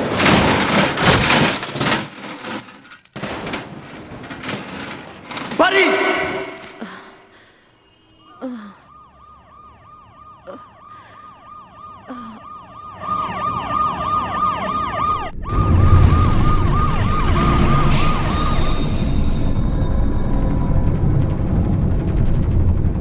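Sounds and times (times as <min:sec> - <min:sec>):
low road noise rumble: 0:03.8 - 0:23.0
ambulance siren wailing: 0:07.9 - 0:19.9.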